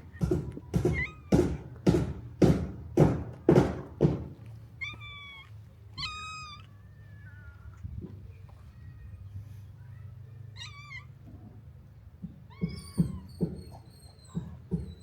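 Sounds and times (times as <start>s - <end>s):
cat meowing: 4.8s - 7.5s, 10.5s - 11.1s.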